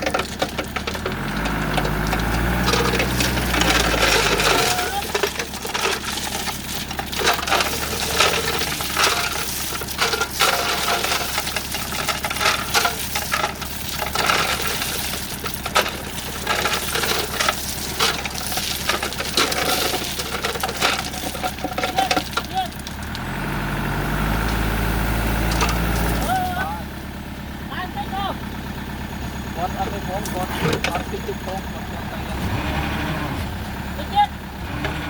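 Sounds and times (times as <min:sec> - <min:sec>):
metallic clinks and rattles: 0:00.0 - 0:23.0
low engine hum: 0:00.0 - 0:35.0.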